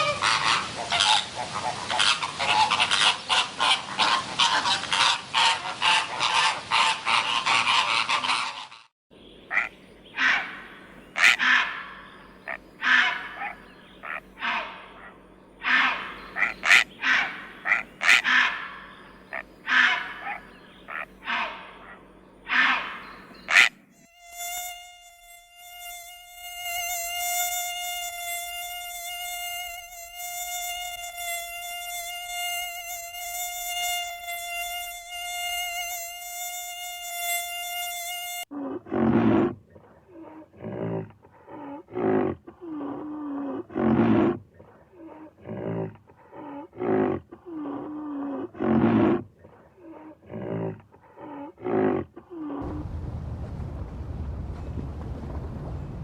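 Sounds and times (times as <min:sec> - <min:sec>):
cicada buzzing whine: 0:21.8 - 0:38.5.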